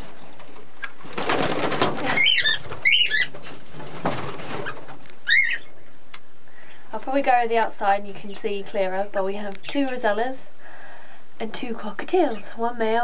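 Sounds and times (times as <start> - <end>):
parrots chirping and chattering: 2.0 - 3.8, 4.4 - 5.9
sharp warbling parrot calls: 2.1 - 3.6, 5.2 - 5.7.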